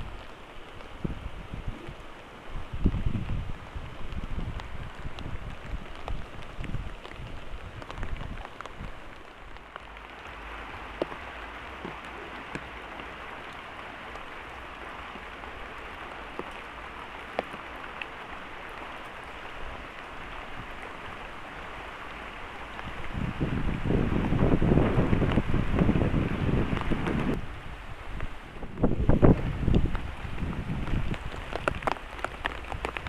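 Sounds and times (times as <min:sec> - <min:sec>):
heavy rain falling: 0:00.0 - 0:33.0
low rumbling: 0:01.0 - 0:17.0.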